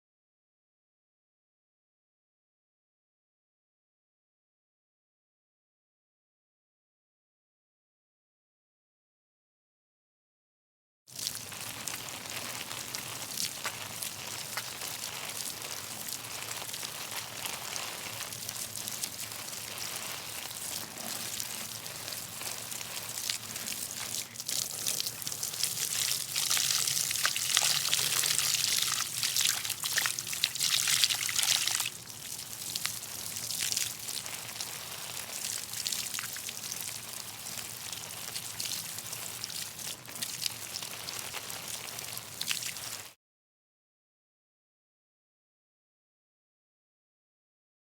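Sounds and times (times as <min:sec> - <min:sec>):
hose water splashing into pots: 0:11.1 - 0:43.2.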